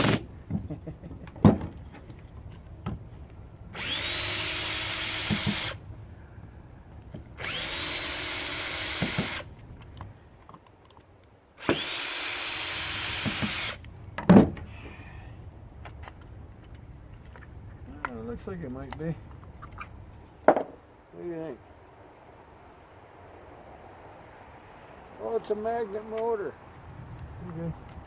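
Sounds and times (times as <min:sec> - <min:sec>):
parts knocking and clicking: 0:00.0 - 0:03.0, 0:15.8 - 0:20.8
power drill whining: 0:03.8 - 0:05.8, 0:07.4 - 0:09.5, 0:11.6 - 0:13.8.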